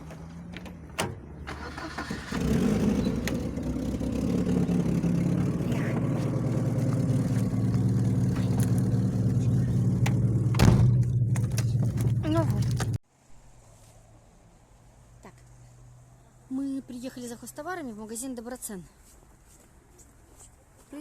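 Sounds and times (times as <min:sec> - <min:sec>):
car engine humming: 0:00.0 - 0:13.0.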